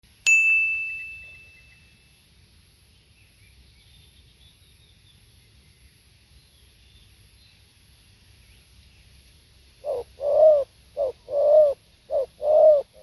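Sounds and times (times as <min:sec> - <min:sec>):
bell-like ding: 0:00.2 - 0:02.0
faint high bird chirps: 0:00.6 - 0:07.6.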